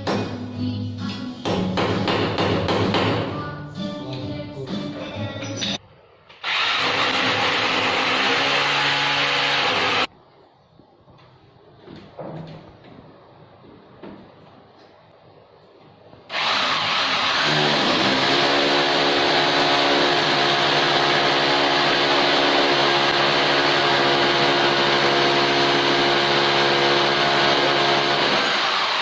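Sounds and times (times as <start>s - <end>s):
power tool motor running: 6.4s - 10.1s, 16.3s - 29.0s.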